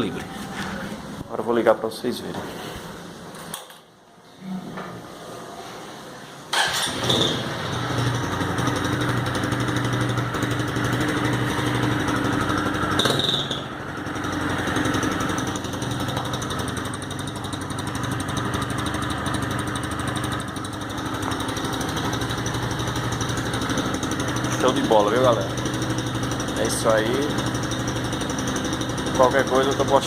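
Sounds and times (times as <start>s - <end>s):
motorcycle engine revving: 6.6s - 30.0s
motorcycle engine idling: 7.5s - 30.0s.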